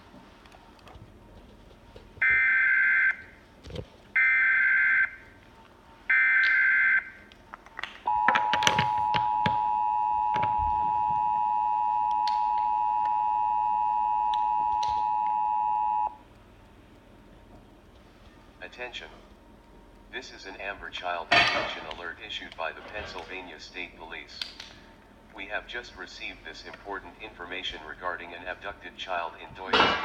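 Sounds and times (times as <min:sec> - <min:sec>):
steady two-tone attention signal: 0:08.1 - 0:16.2.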